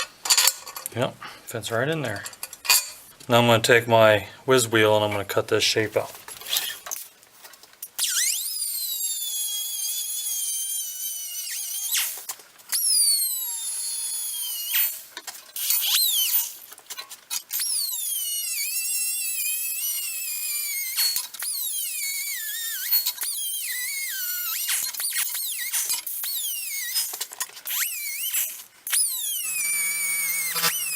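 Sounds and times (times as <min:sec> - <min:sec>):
cut-off wheel cutting metal: 0:19.5 - 0:30.9.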